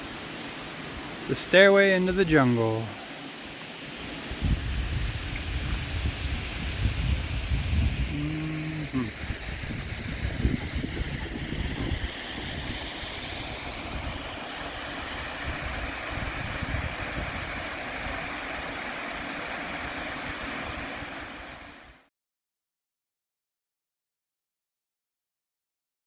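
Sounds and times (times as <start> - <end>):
steady outdoor hiss: 0.0 - 22.1
wind buffeting microphone: 4.3 - 14.4, 15.1 - 18.2.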